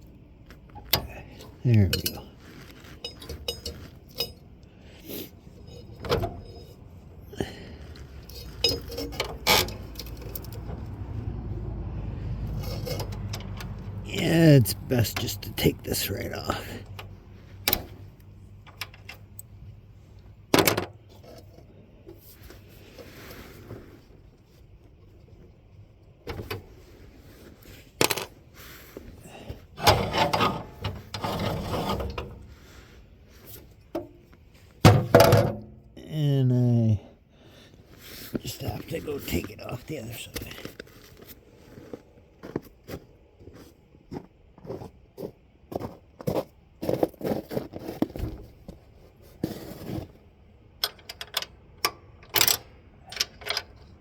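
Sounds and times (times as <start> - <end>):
metal tools clinking and clanking: 0.8 - 4.5, 5.5 - 6.8, 7.4 - 10.7, 12.6 - 16.7, 29.8 - 32.4
metal part rattling and scraping: 0.8 - 6.9, 7.9 - 11.0, 12.5 - 16.5, 27.8 - 28.4, 29.6 - 32.6.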